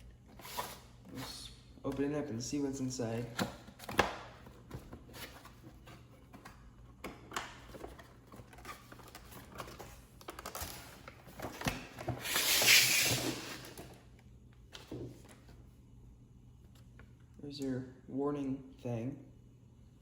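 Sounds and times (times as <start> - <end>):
cardboard scraping tearing rustle: 12.0 - 13.8.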